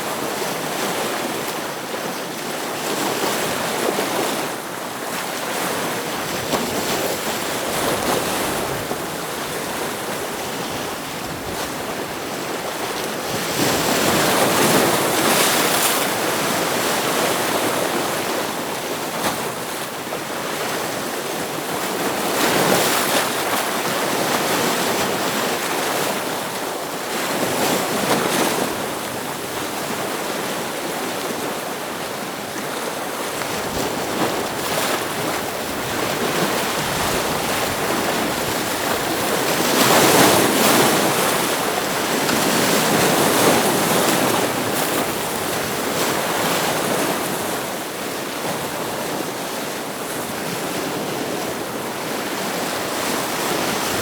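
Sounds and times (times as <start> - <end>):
ocean waves washing against rocks: 0.0 - 54.0.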